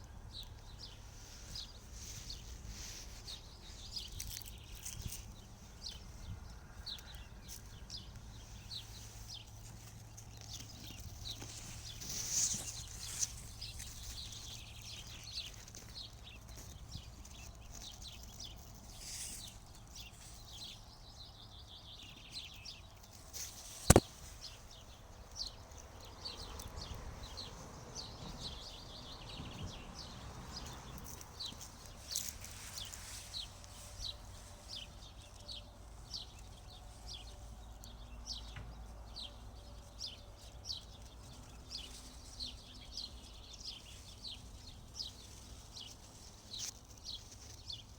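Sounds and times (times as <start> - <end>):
small birds chirping: 0.0 - 47.9
sharp click: 23.8 - 24.2.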